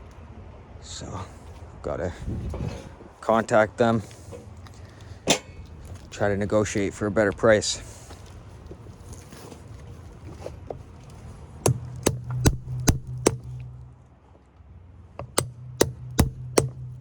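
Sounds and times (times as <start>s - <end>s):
low ringing hum: 2.1s - 17.0s
sharp hammer blows: 11.7s - 13.8s, 15.3s - 17.0s.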